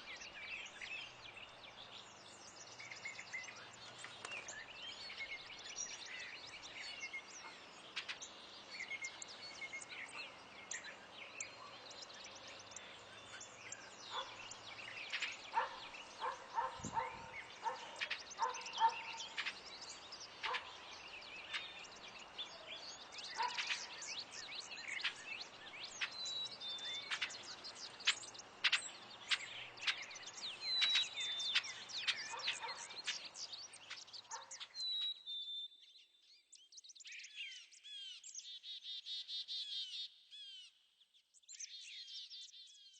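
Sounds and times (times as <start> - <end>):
birds chirping and calling: 0.0 - 35.6.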